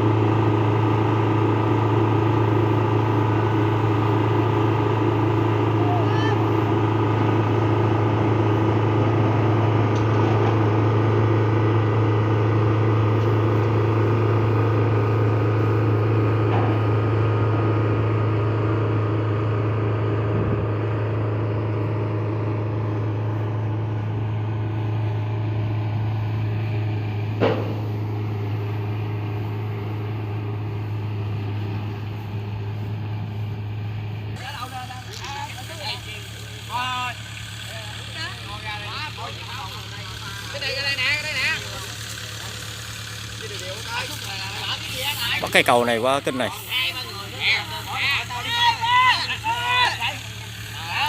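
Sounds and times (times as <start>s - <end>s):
diesel engine running: 0.0s - 51.0s
sharp metallic clank: 27.4s - 28.0s.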